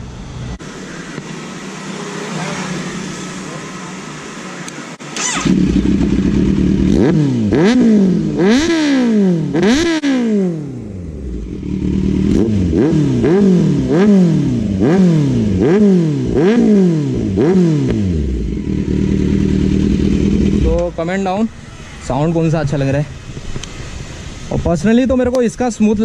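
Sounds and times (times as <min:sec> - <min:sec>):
motorcycle engine revving: 0:05.0 - 0:24.6.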